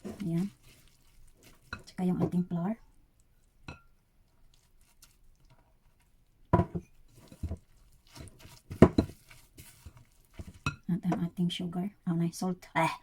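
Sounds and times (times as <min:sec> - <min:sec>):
light tapping and rustling: 0:06.6 - 0:10.8.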